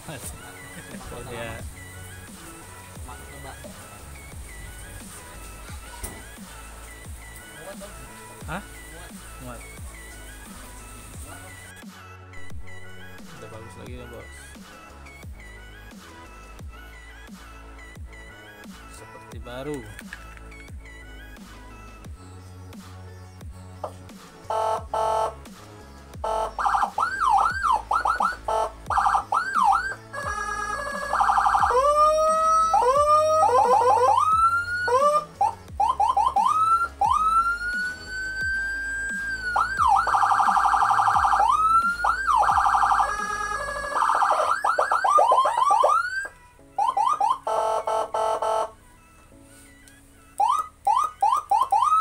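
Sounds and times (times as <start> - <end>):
electronic siren: 24.5 - 25.4, 26.2 - 48.7, 50.4 - 52.0.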